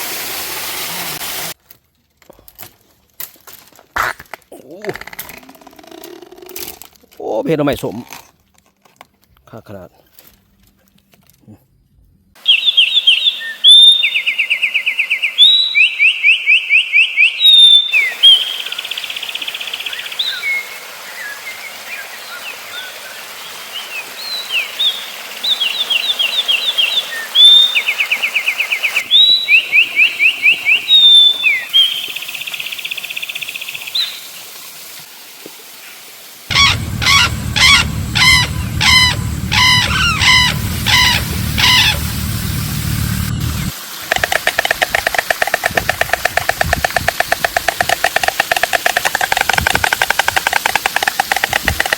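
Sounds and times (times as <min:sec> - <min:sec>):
rhythmic bird calls: 0:36.5 - 0:42.2, 0:44.1 - 0:51.9
songbirds trilling: 0:36.5 - 0:42.2, 0:44.1 - 0:51.9
low hum: 0:36.5 - 0:43.7.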